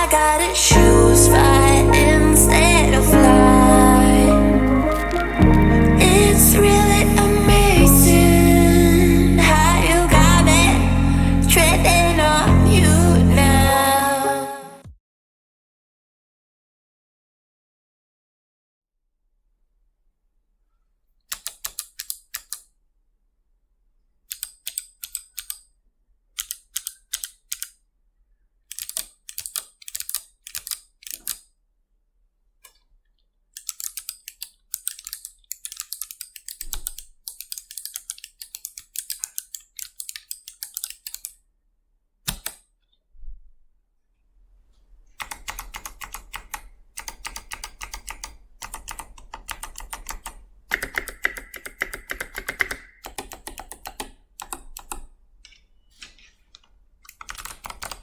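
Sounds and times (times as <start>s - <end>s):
typing on mechanical keyboard: 21.3s - 22.6s, 24.3s - 25.6s, 26.4s - 27.7s, 28.7s - 31.4s, 33.6s - 41.3s, 45.2s - 55.1s, 57.1s - 58.0s.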